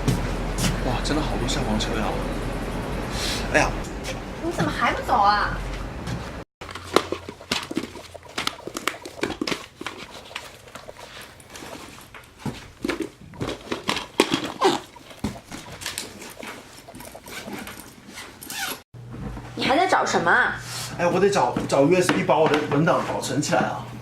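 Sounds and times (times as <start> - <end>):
objects rustling and clattering: 5.6 - 19.6.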